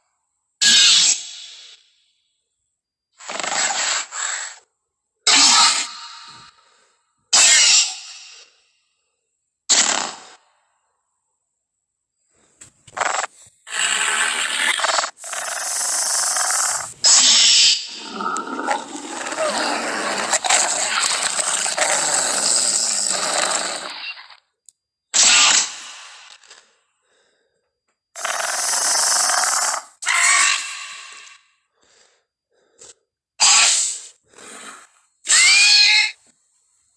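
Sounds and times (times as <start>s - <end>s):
raspy hissing animal calls: 0.6s - 1.8s, 3.2s - 4.6s, 7.4s - 8.5s, 13.0s - 24.2s, 25.2s - 26.2s, 28.2s - 31.4s, 33.4s - 36.2s.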